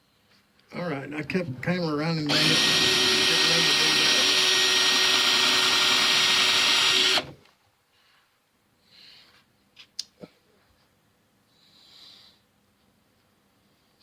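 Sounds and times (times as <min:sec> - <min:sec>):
small electric power tool running: 0:02.3 - 0:07.4.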